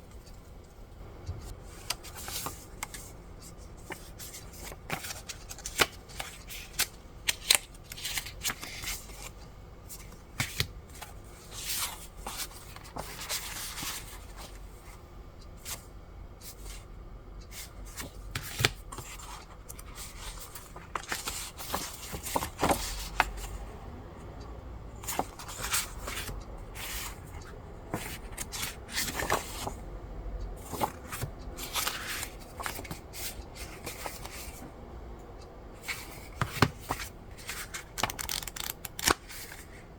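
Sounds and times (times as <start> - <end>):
paper rustling: 35.8 - 39.8.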